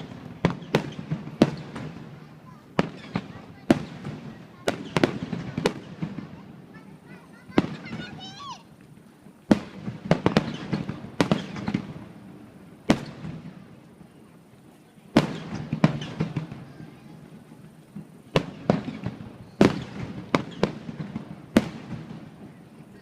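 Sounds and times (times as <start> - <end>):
fireworks bursting: 0.0 - 23.0
fireworks crackling: 0.0 - 23.0.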